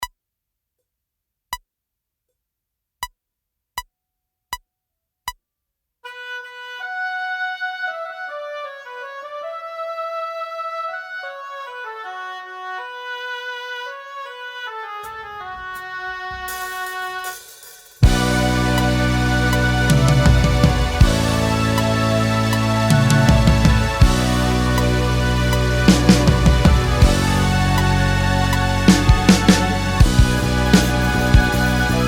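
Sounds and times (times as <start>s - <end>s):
synthesizer pad chords and melody: 18.0s - 32.0s.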